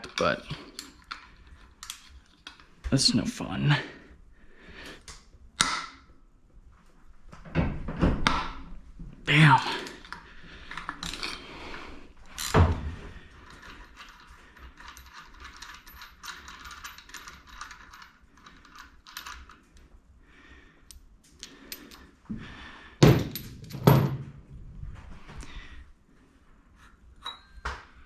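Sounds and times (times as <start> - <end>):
metal tool clanks: 27.2 - 27.6.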